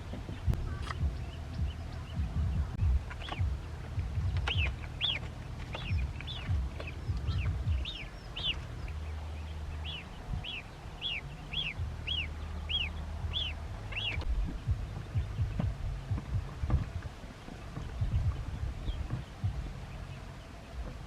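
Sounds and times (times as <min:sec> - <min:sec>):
low knocks: 0:00.0 - 0:09.2, 0:13.1 - 0:21.0
ducklings peeping: 0:00.0 - 0:21.0
low steady rumble: 0:00.0 - 0:21.0.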